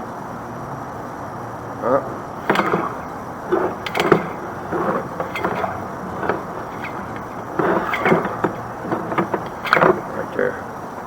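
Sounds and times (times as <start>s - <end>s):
irregular knocks and rattles: 2.4s - 10.4s.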